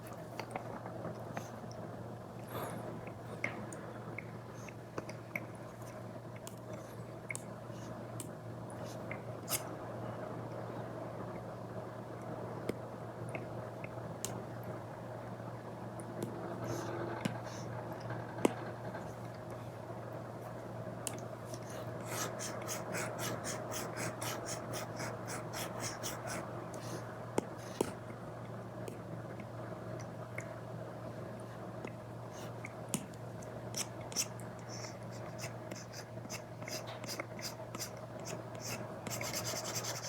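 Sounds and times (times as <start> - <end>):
stylus tapping and scratching on screen: 21.6 - 26.5, 32.4 - 40.0.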